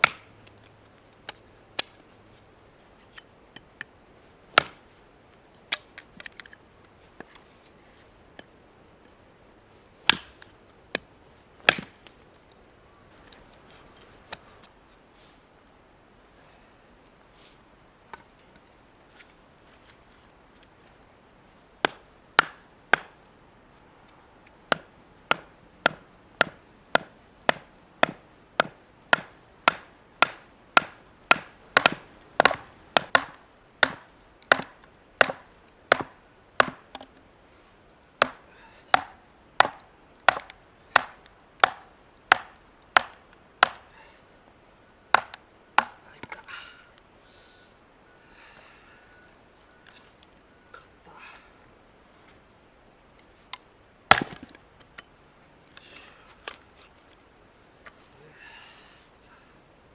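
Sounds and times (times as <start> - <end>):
axe chopping firewood: 0.0 - 0.4, 4.5 - 4.9, 10.0 - 12.2, 21.8 - 23.3, 24.7 - 37.2, 38.2 - 44.2, 45.1 - 46.1, 54.1 - 54.6.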